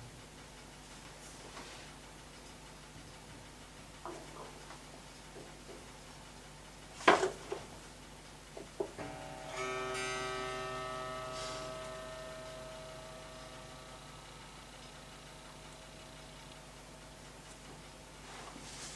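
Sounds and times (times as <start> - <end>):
piano strings ringing: 9.0 - 16.4.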